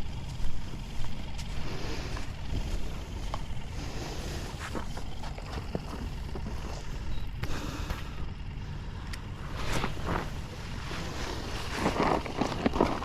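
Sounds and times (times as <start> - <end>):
scuffs and clicks: 9.1 - 13.0.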